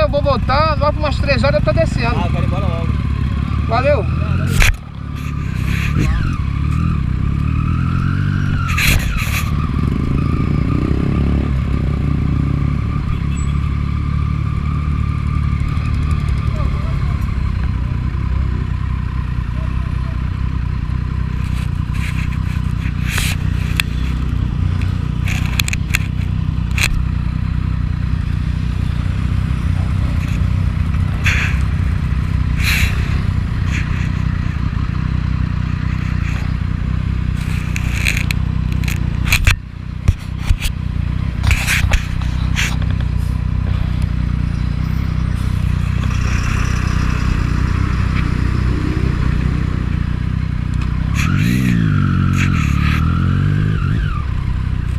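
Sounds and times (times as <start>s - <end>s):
motorcycle engine running: 0.0s - 54.9s
scraping and rustling noises: 4.5s - 6.8s, 8.6s - 9.6s, 21.3s - 27.0s, 30.1s - 34.4s, 35.8s - 36.6s, 37.3s - 40.8s, 41.4s - 43.4s, 51.1s - 53.1s.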